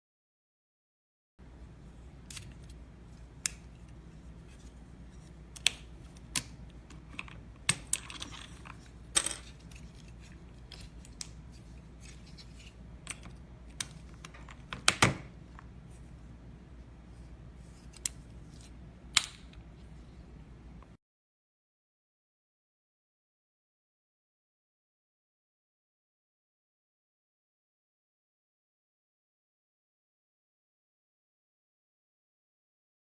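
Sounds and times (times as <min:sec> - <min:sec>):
low steady hum: 0:01.4 - 0:21.0.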